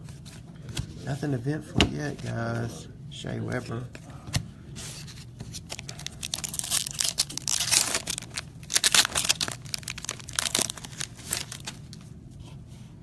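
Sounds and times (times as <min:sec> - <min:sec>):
foil wrapper crinkling and tearing: 0:05.5 - 0:12.1.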